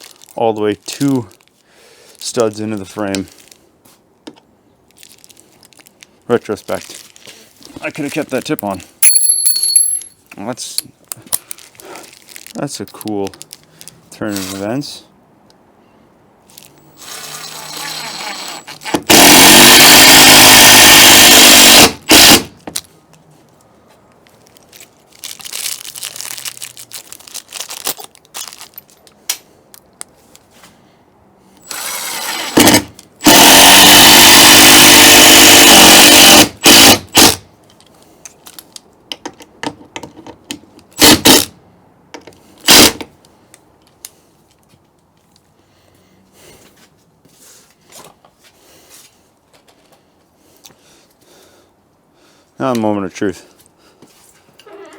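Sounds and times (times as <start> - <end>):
power drill driving screws: 17.0 - 22.5, 31.6 - 37.4, 41.0 - 41.5, 42.7 - 43.0.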